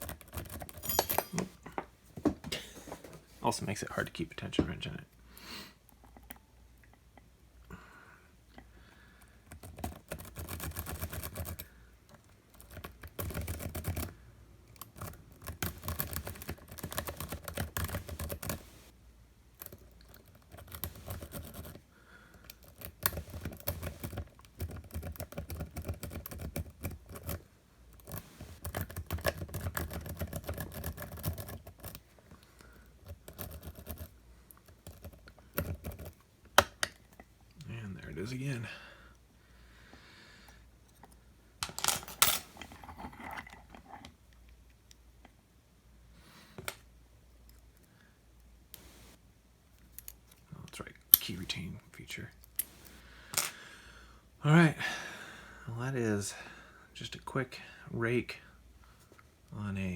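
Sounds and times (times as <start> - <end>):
lock pick scrubbing padlock pins: 0.0 - 1.6.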